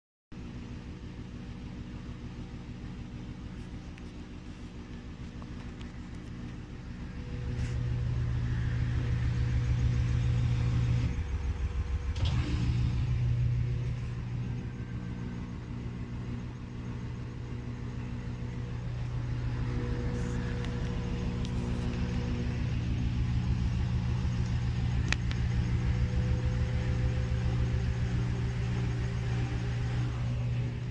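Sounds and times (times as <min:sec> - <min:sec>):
motor hum: 0:00.4 - 0:30.9
washing machine drum rumbling: 0:06.6 - 0:30.9.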